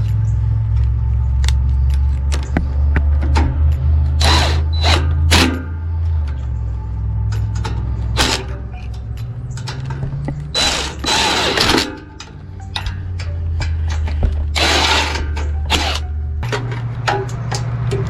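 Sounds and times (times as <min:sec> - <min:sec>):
steady low hum: 0:00.0 - 0:18.0
power tool bursts: 0:04.2 - 0:05.6, 0:08.2 - 0:08.5, 0:10.6 - 0:12.0, 0:14.6 - 0:16.0.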